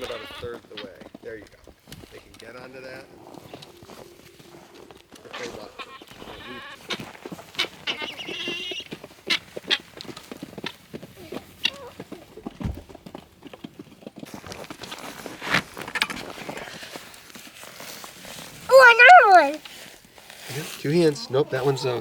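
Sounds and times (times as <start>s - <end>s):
chickens squawking: 5.4s - 9.8s, 18.7s - 19.6s, 21.2s - 22.0s.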